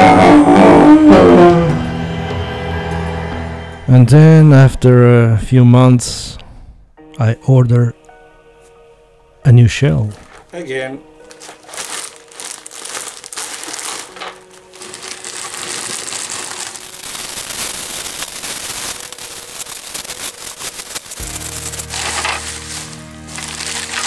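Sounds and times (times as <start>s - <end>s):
background music: 0.0s - 24.0s
plastic packaging crinkling: 11.2s - 24.0s.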